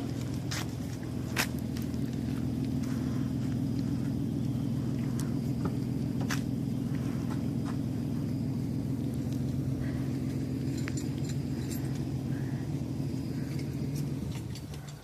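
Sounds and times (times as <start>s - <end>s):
engine running steadily: 0.0s - 15.0s
light metallic clinks: 9.2s - 15.0s.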